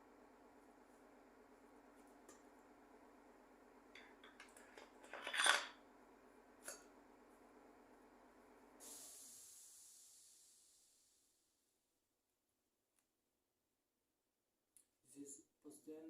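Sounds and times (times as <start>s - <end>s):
metal scrape: 5.0s - 5.7s
high hiss: 8.8s - 11.4s.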